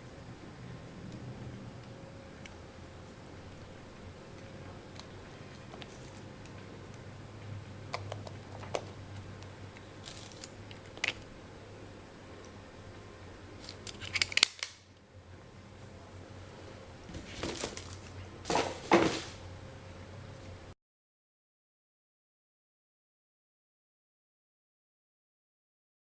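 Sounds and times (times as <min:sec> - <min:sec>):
low steady hum: 0:00.0 - 0:20.8
handling clicks: 0:13.6 - 0:14.8.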